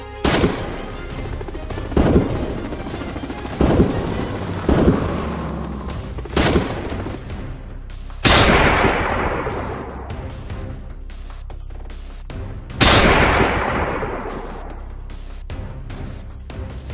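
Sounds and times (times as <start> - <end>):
low background music: 0.0 - 16.9
echoing gunshots: 0.2 - 7.6, 8.2 - 10.2, 12.8 - 14.8.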